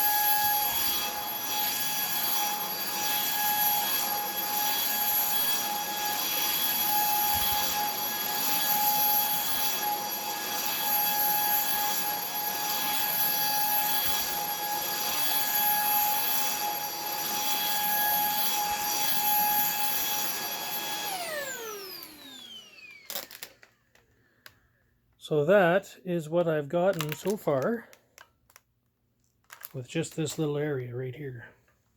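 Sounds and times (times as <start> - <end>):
vacuum motor whine: 0.0 - 23.6.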